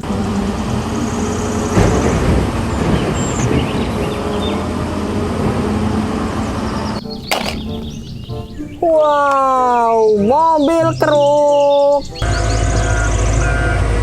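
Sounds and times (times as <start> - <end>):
heavy vehicle engine rumbling: 0.0 - 9.0, 12.1 - 14.0.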